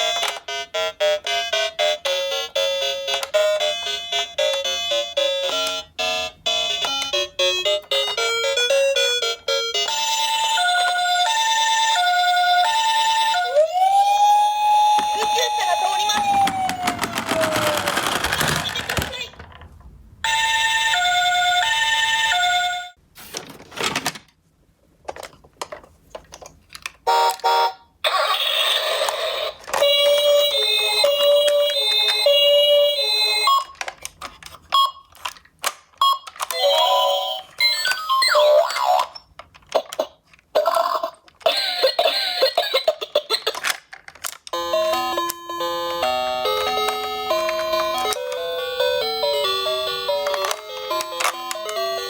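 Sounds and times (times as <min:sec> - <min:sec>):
toy electronic siren: 0:00.0 - 0:19.0, 0:36.0 - 0:39.2
plastic toy cars clicking: 0:14.9 - 0:19.7, 0:28.3 - 0:45.5, 0:46.6 - 0:48.5, 0:49.4 - 0:52.0.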